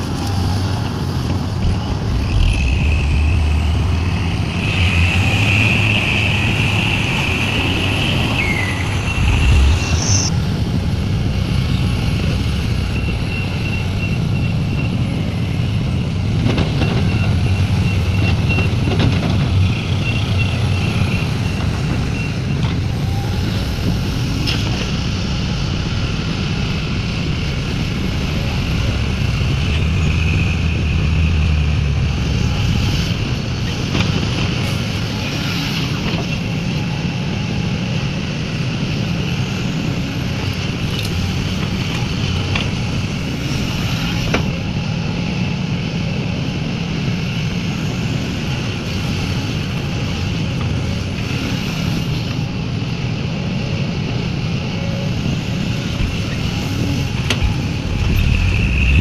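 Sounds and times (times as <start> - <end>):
heavy diesel engine running: 0.0 - 59.0.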